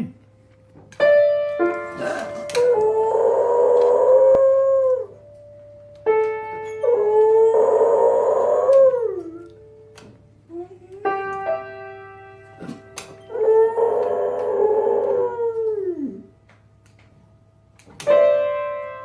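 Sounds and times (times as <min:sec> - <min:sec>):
sustained piano chords: 0:00.0 - 0:19.0
dog howling: 0:02.0 - 0:05.2, 0:06.8 - 0:09.6, 0:13.3 - 0:16.3.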